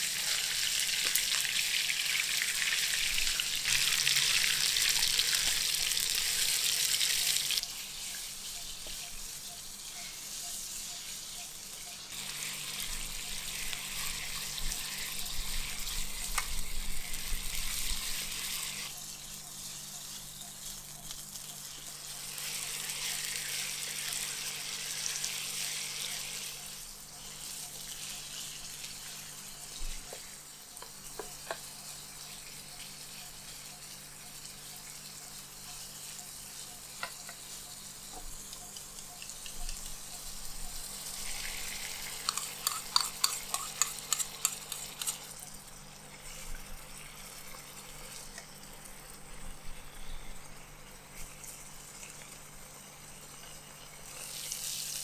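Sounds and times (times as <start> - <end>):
food sizzling in a hot pan: 0.0 - 55.0
spatula clattering against pan: 42.2 - 45.2.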